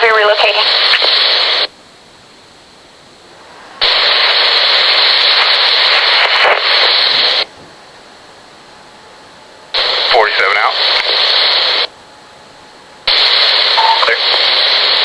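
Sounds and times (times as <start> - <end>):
radio static burst: 0.0 - 1.8, 3.4 - 7.5, 9.7 - 11.9, 13.1 - 15.0
low hiss: 0.0 - 15.0.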